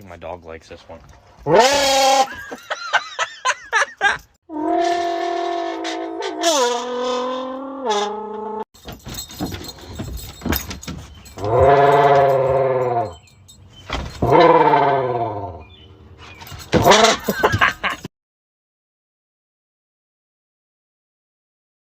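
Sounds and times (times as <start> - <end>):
man imitating engine revving: 1.5 - 2.4, 4.5 - 8.6, 14.2 - 15.6.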